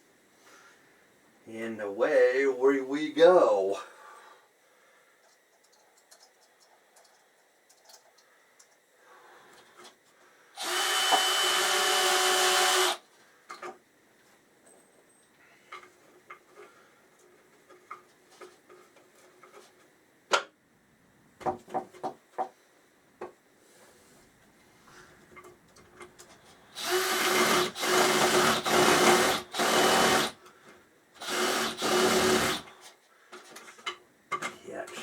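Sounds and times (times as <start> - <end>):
small electric drill running: 10.6 - 13.0, 26.7 - 30.4, 31.2 - 32.7.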